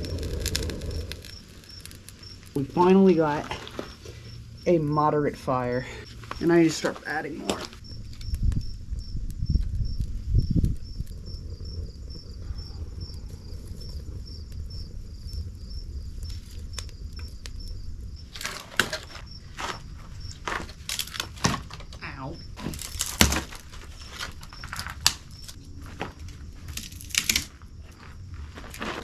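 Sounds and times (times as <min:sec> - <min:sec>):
low rumble: 0:00.0 - 0:06.4, 0:07.8 - 0:20.9
insect chirping: 0:00.0 - 0:28.8
sticks cracking and snapping: 0:18.4 - 0:19.7, 0:20.5 - 0:22.0, 0:22.6 - 0:25.6, 0:26.7 - 0:27.6.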